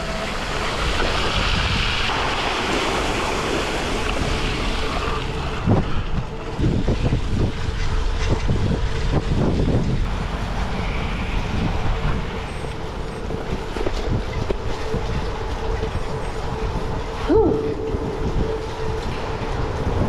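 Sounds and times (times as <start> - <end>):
wind rushing over microphone: 0.0 - 20.0
low buffeting thumps: 5.1 - 20.0.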